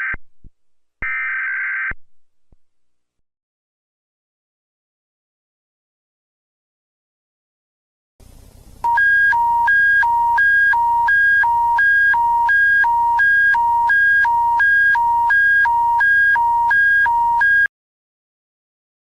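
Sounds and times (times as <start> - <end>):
alternating alert beeps: 8.8 - 17.7.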